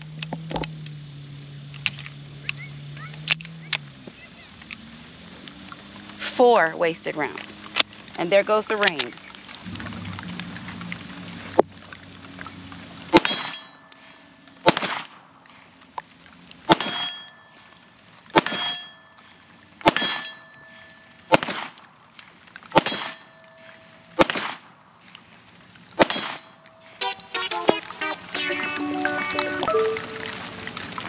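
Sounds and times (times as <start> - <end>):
pistol shots with metallic ring: 13.1 - 14.0, 14.6 - 15.1, 16.7 - 17.6, 18.4 - 19.2, 19.8 - 21.7, 22.8 - 24.6, 26.0 - 26.9.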